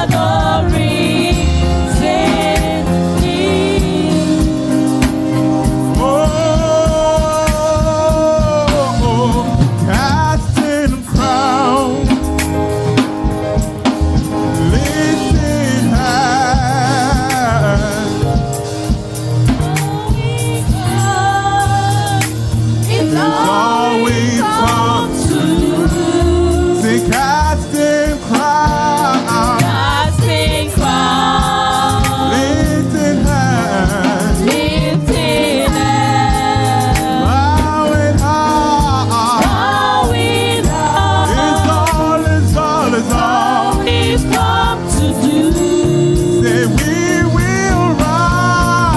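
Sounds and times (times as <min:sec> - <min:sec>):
drum kit and band: 0:00.0 - 0:48.9
singers with vibrato: 0:19.6 - 0:48.9.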